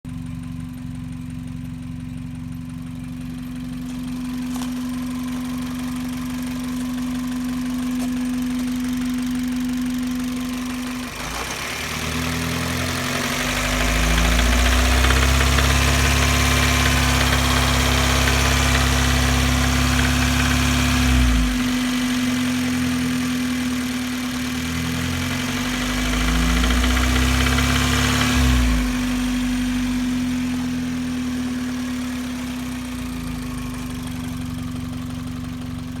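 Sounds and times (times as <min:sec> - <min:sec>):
loud engine ticking: 0:00.1 - 0:36.0
car engine revving: 0:09.9 - 0:36.0.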